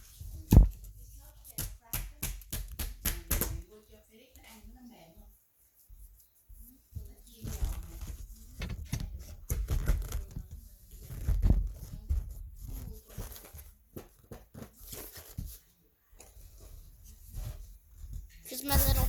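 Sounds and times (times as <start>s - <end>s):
rustling handling noise: 4.4s - 19.0s.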